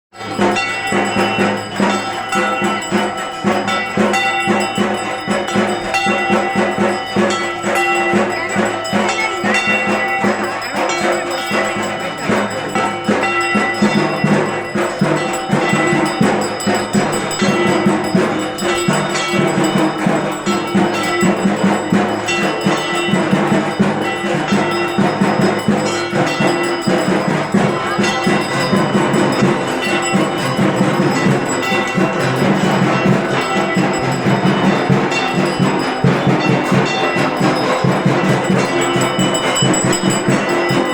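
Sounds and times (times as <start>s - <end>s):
bells ringing: 0.1s - 40.9s
drums beating rapidly: 0.1s - 40.9s
struck metal percussion: 0.1s - 40.9s.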